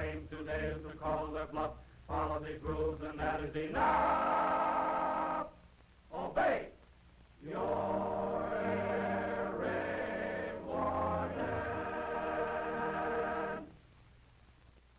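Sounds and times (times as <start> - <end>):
choir holding a chord: 0.0 - 5.5, 7.4 - 13.8.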